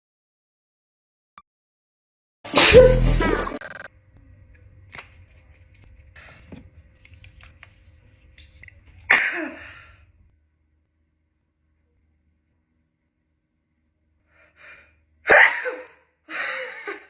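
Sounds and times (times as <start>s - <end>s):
person sneezing: 2.5s - 3.5s.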